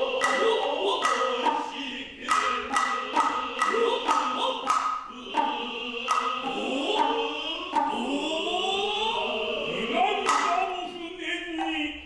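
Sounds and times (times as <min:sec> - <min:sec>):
hand-drum strikes: 0:00.0 - 0:08.3, 0:10.2 - 0:10.8
sliding vocal calls: 0:00.0 - 0:11.9.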